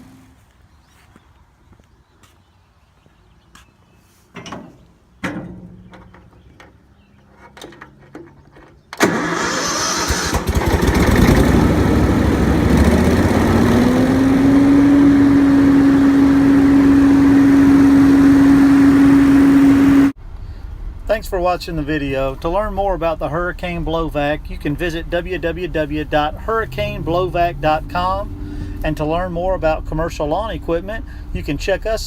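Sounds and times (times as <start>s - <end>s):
blower engine running: 9.0s - 20.2s, 26.8s - 31.5s
rush of air: 19.8s - 21.1s.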